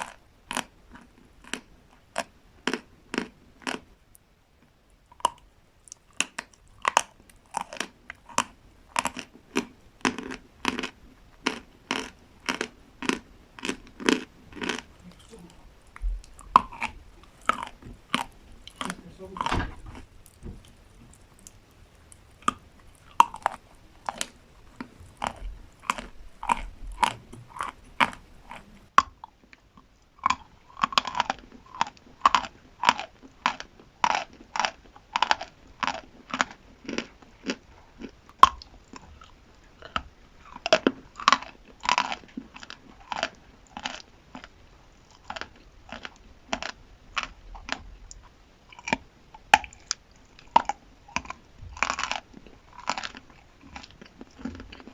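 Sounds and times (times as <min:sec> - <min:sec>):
chewing crunchy chalk: 0:05.1 - 0:54.9.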